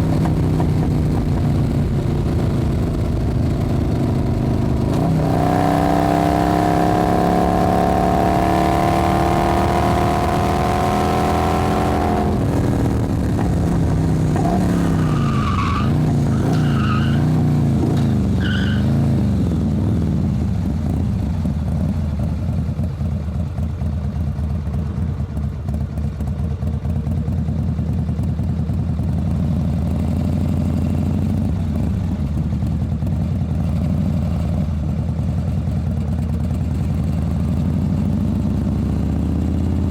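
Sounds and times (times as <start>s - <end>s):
motorcycle engine revving: 0.0s - 23.1s, 36.0s - 39.9s.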